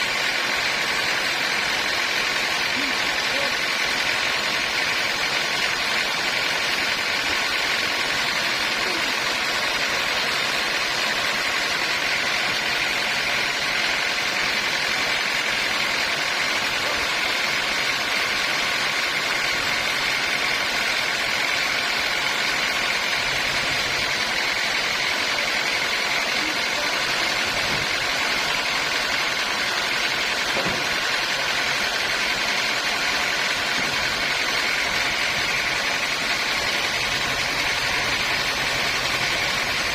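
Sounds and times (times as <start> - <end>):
sawmill machinery running: 0.0 - 39.9.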